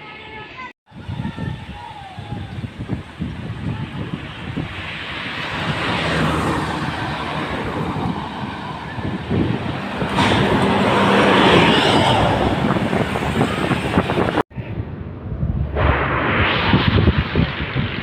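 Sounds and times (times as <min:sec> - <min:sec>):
vehicle passing by: 0:04.6 - 0:14.4.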